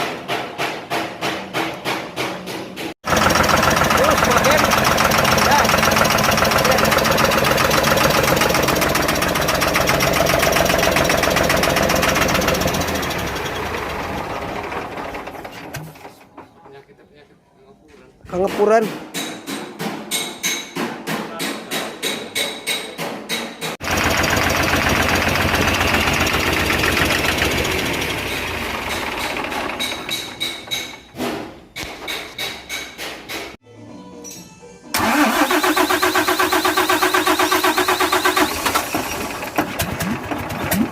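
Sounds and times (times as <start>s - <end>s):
truck diesel engine knocking: 3.0s - 15.5s, 23.8s - 31.1s.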